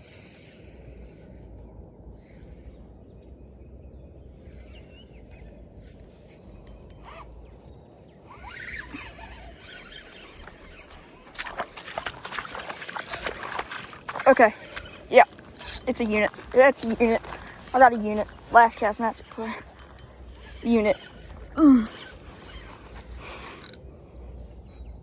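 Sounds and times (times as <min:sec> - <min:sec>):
faint clicks: 0:06.2 - 0:07.4, 0:08.3 - 0:23.9
sharp clicking and rustling: 0:08.3 - 0:23.8.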